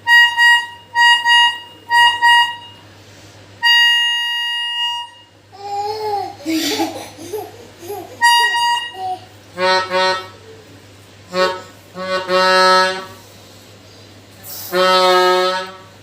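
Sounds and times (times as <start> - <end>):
multi-tone bus horn toots: 0.0 - 3.0, 3.6 - 5.4, 8.2 - 9.0, 9.6 - 10.4, 11.3 - 13.2, 14.5 - 16.0.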